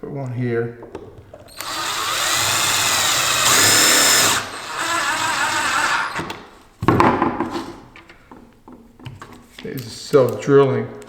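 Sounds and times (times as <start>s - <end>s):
impact driver driving screw: 1.5s - 6.5s.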